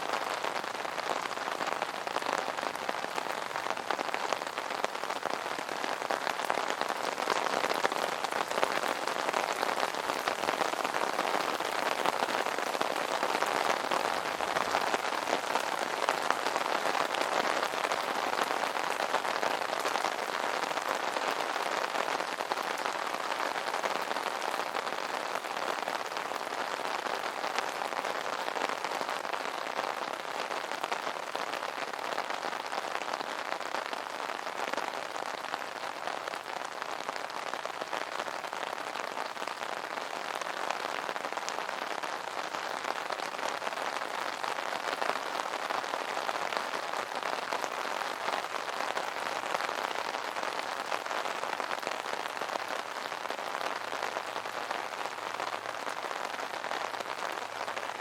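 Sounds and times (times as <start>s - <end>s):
rain pattering on an umbrella: 0.0s - 58.0s.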